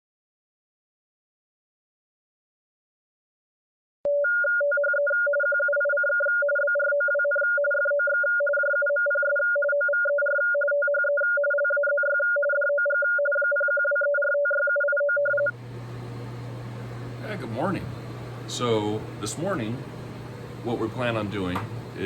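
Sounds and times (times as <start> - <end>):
radioteletype tones switching: 15.1 - 22.0
steady hum: 15.3 - 22.0.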